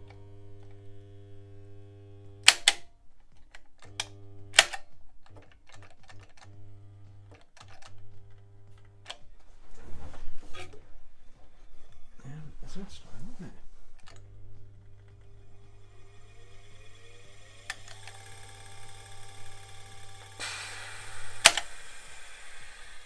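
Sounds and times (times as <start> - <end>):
sewing machine motor humming: 14.0 - 23.0.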